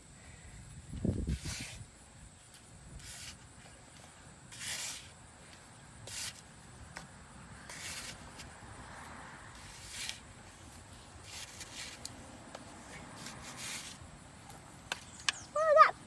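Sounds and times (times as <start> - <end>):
sand gritty swishes: 1.2 - 6.7, 7.6 - 14.1.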